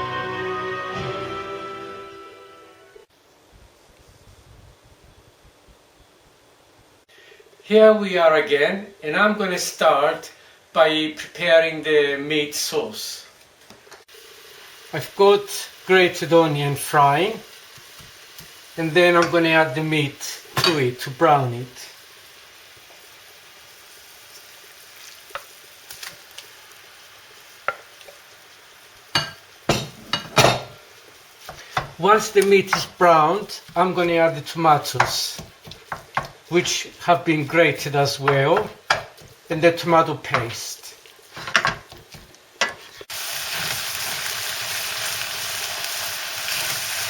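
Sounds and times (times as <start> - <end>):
onion sizzling in oil: 14.0 - 47.0.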